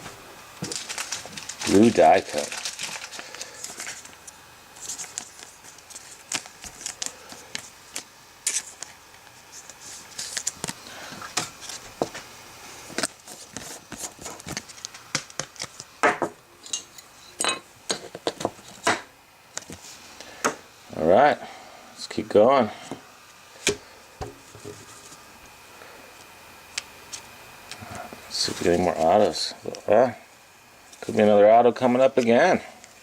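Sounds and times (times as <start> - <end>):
trading cards handled on a table: 0.6 - 12.3, 12.9 - 15.9.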